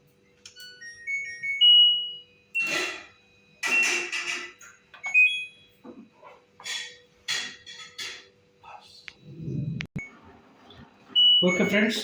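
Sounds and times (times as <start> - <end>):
washing machine control panel beeping: 0.4 - 5.7, 9.9 - 12.0.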